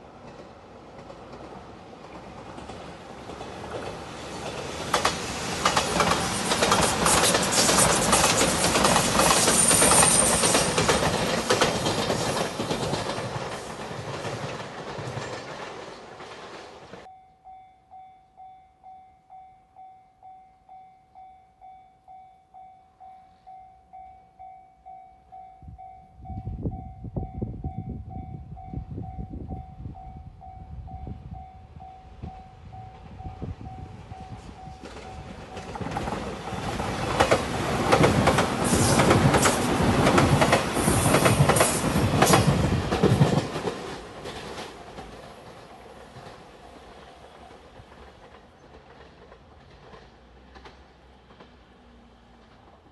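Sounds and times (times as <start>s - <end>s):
train wheels clattering on rails: 0.0s - 17.1s, 32.2s - 52.9s
rumble of approaching train: 0.0s - 18.5s, 20.2s - 52.9s
level crossing alarm bell: 17.1s - 35.8s.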